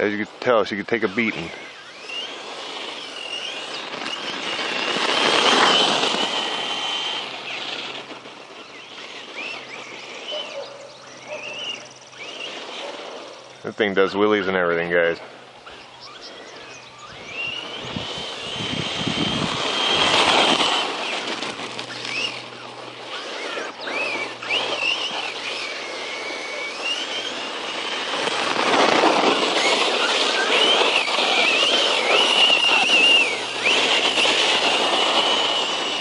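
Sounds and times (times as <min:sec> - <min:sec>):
tyres rushing on ground: 0:00.0 - 0:10.4, 0:11.1 - 0:36.0
electric motor whining: 0:00.0 - 0:36.0.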